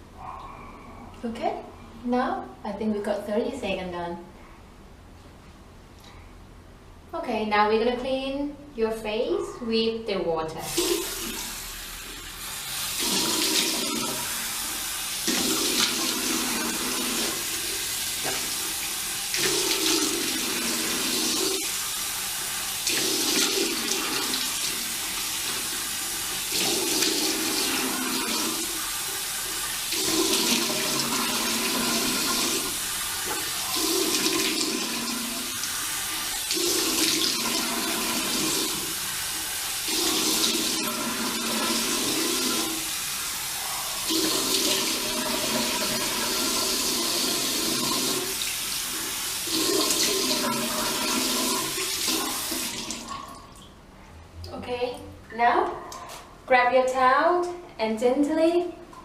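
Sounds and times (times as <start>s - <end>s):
tap running into sink: 17.1s - 17.4s, 18.2s - 18.6s.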